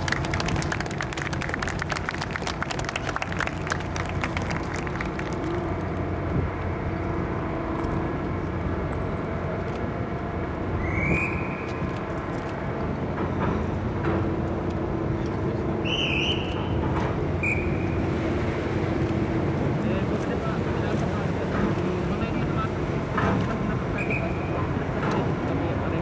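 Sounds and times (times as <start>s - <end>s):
ship engines rumbling: 0.0s - 26.0s.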